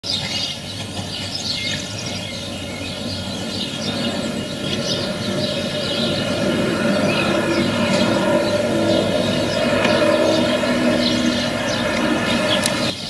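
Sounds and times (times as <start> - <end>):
low background rumble: 1.3 - 12.9
high wavering chirps: 2.0 - 12.9.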